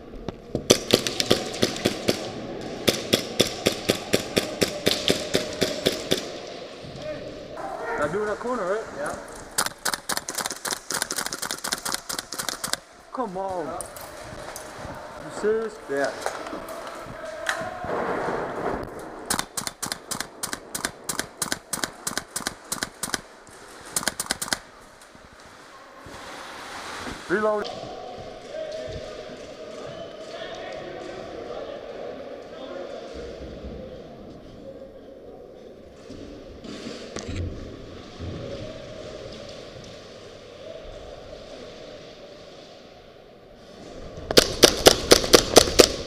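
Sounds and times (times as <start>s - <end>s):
airsoft rifle shots: 0.7s - 6.4s, 9.6s - 12.8s, 19.3s - 23.3s, 23.9s - 24.6s, 44.3s - 46.0s.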